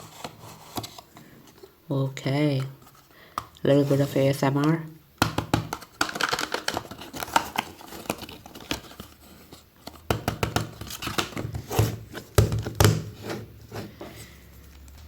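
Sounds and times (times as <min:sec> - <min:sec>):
plastic packaging crinkling and tearing: 0:05.8 - 0:09.6.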